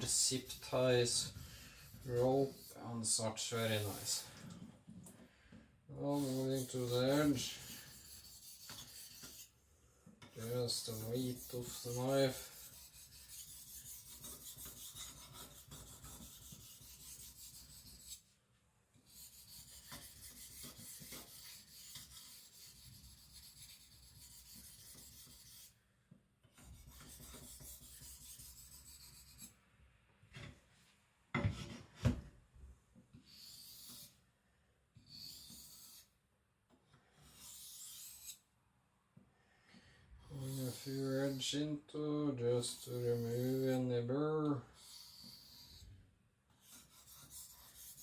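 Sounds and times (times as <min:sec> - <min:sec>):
knife scraping on whetstone: 0:06.2 - 0:09.5, 0:10.4 - 0:18.2, 0:19.1 - 0:25.8, 0:33.2 - 0:34.2, 0:35.0 - 0:36.1, 0:37.2 - 0:38.4, 0:44.8 - 0:45.9, 0:46.6 - 0:48.0.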